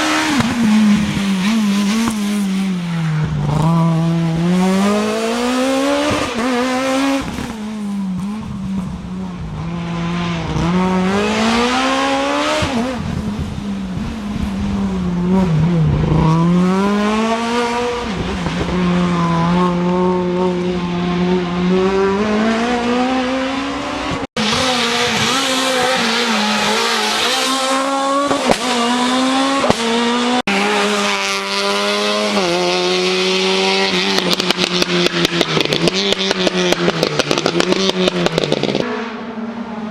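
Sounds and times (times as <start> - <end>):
rally car engines at full throttle: 0.0 - 39.9.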